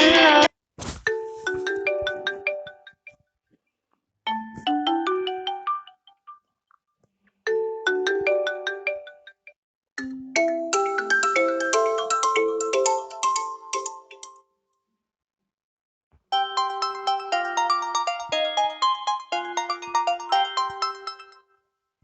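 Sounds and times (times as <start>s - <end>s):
smartphone ringtone melodies: 1.1s - 3.1s, 4.3s - 6.2s, 7.6s - 9.4s, 10.0s - 14.3s, 16.3s - 21.5s.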